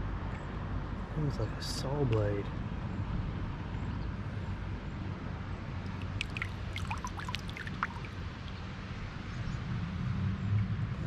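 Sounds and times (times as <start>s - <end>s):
small splashes and drips: 5.8s - 8.8s
creek water trickling: 5.8s - 9.3s.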